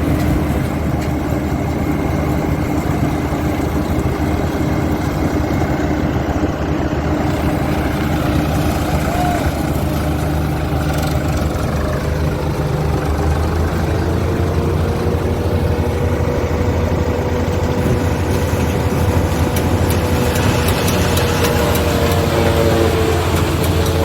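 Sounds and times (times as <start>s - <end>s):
harvesting machinery engine drone: 0.0s - 24.0s
steady machine whine: 0.0s - 24.0s
fast rattle of clicks: 17.7s - 24.0s.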